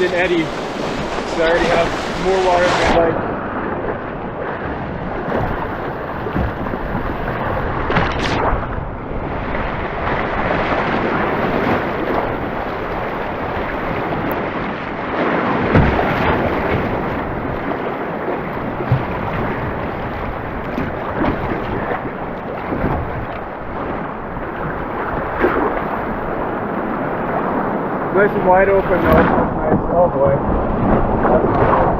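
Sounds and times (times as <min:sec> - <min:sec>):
rush of whitewater rapids: 0:00.0 - 0:03.2
waves splashing against boat: 0:00.0 - 0:31.9.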